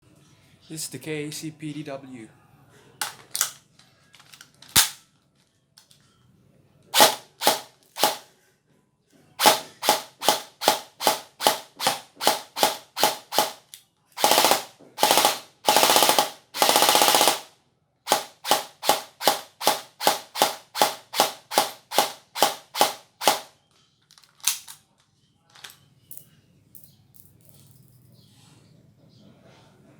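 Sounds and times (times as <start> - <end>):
airsoft gun dry firing clicks: 3.0 - 3.6, 4.2 - 5.0, 7.0 - 8.2, 9.4 - 17.5, 18.1 - 23.5, 24.1 - 24.8.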